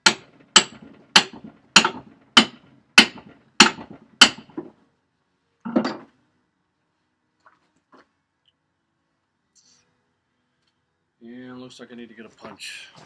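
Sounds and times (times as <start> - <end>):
hammer striking metal: 0.0 - 4.7.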